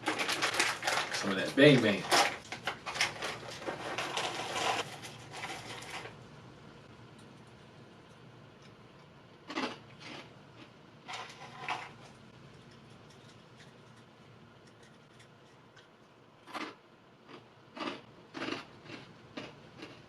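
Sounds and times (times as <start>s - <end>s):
plastic snack wrapper crinkling: 0.0s - 6.2s.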